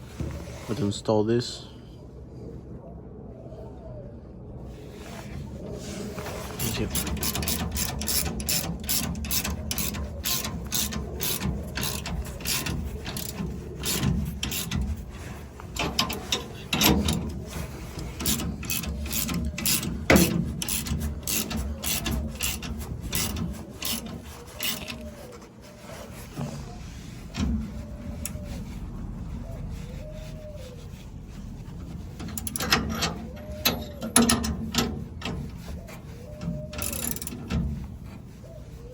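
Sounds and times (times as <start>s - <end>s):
ratchet wrench clicking: 6.6s - 14.8s, 18.0s - 25.1s, 32.4s - 33.0s, 36.8s - 37.4s.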